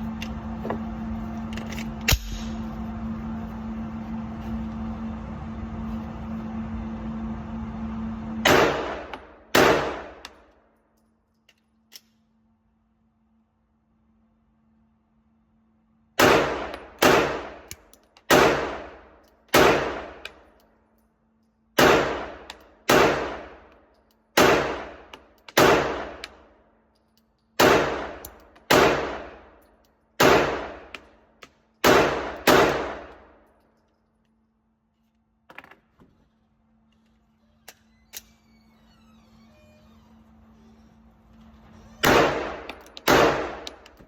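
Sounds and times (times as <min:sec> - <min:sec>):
pistol shots with ringing echo: 0:08.5 - 0:10.2, 0:16.2 - 0:17.7, 0:18.3 - 0:20.2, 0:21.8 - 0:23.6, 0:24.4 - 0:25.0, 0:25.6 - 0:26.2, 0:27.6 - 0:29.5, 0:30.2 - 0:30.9, 0:31.8 - 0:33.3, 0:42.0 - 0:43.8.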